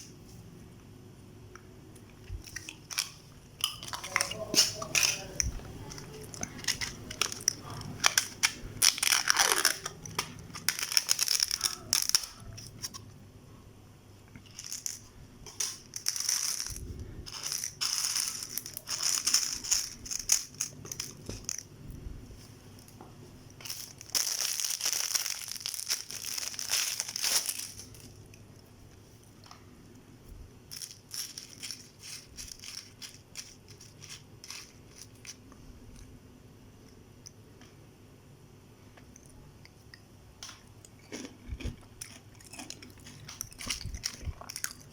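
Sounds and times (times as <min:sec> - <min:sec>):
crunching and chewing noodles: 0:02.0 - 0:13.1, 0:14.3 - 0:21.7, 0:22.9 - 0:29.0, 0:39.0 - 0:44.9.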